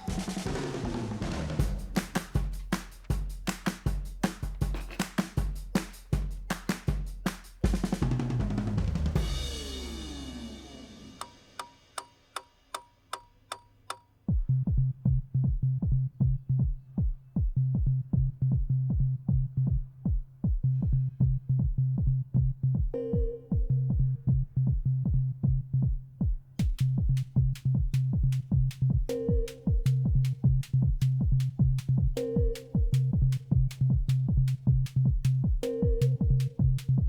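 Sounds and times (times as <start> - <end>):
fast kick-drum beat: 0.0 - 11.6, 14.3 - 37.0
low bass drone: 32.8 - 37.0.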